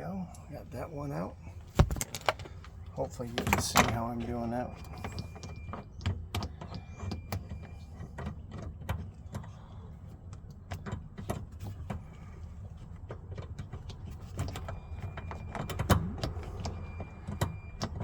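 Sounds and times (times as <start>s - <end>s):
small clicks and light knocks: 4.9s - 18.0s.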